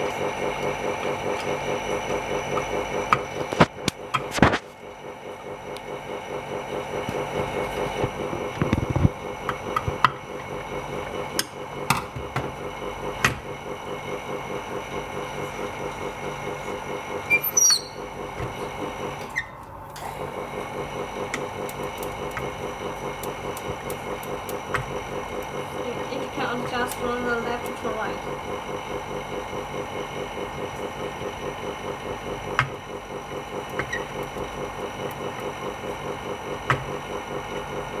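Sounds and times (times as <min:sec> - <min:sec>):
small machine pulsing hum: 0:00.0 - 0:38.0.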